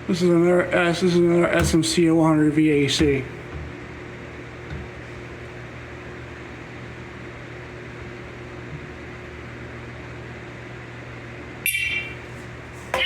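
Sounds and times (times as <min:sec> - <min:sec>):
low background hum: 0:00.0 - 0:13.0
smoke alarm beep: 0:11.6 - 0:12.2.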